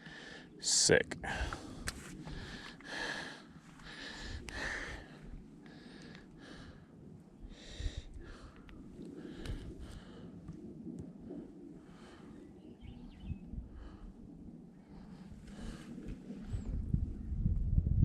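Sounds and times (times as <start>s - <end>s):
person breathing in and out: 1.2s - 10.5s, 13.6s - 16.8s.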